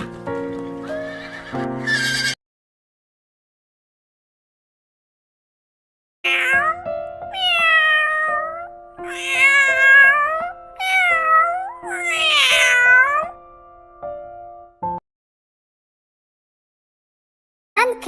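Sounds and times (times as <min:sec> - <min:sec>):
background music with held notes: 0:00.0 - 0:02.3, 0:06.3 - 0:15.0
cat meowing: 0:01.0 - 0:02.4, 0:06.3 - 0:13.4.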